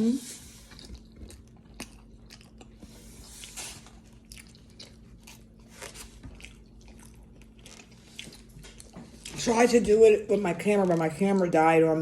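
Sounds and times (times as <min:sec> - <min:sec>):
chewing and biting: 0:00.3 - 0:09.4.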